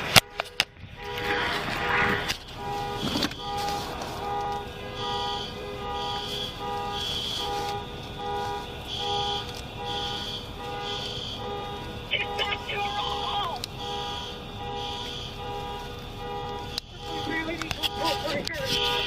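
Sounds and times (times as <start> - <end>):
car alarm beeping low tone: 0.0 - 19.0
higher alarm tone: 10.0 - 15.4.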